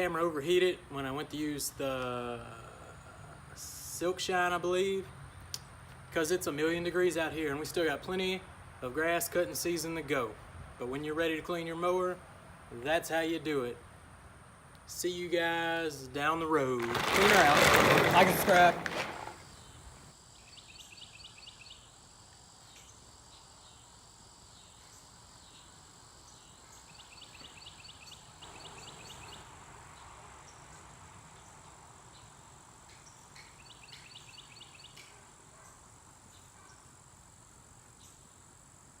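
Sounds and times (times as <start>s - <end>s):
insect chirping: 19.4s - 35.0s, 35.7s - 39.0s.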